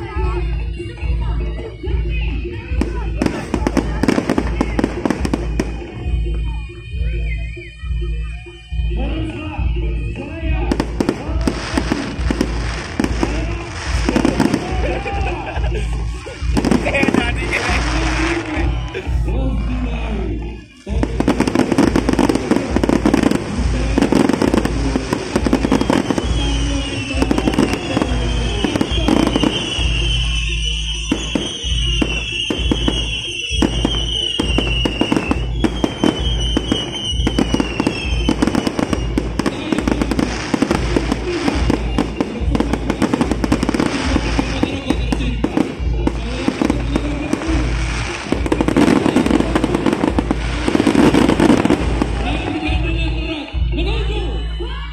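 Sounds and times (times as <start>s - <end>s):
fireworks bangs and crackling: 0.0s - 7.4s, 8.2s - 53.7s
wavering high whistle: 25.4s - 46.0s.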